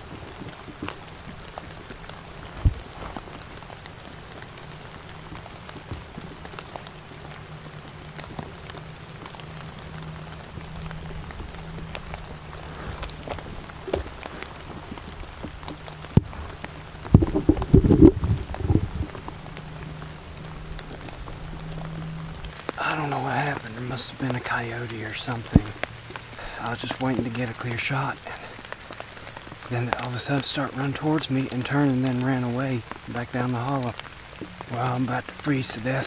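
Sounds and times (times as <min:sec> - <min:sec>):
faint low hum: 0:00.0 - 0:35.4
drops ticking: 0:00.0 - 0:36.0
rain falling in woods: 0:00.0 - 0:36.0.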